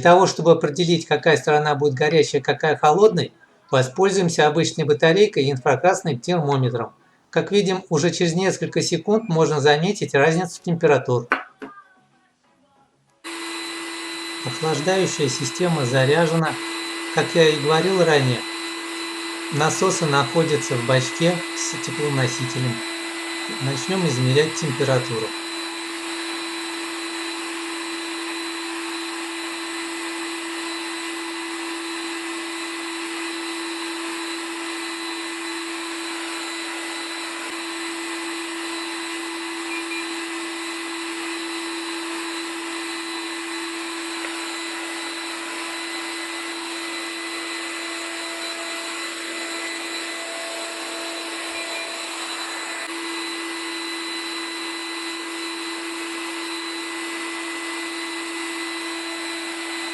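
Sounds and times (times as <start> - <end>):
vacuum turbine running: 13.3 - 59.9.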